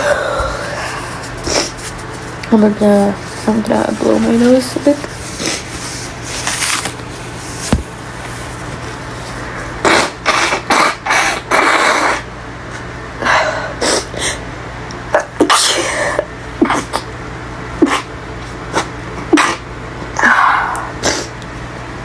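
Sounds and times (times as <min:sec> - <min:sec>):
person blowing nose: 0:00.4 - 0:01.9, 0:09.8 - 0:12.2.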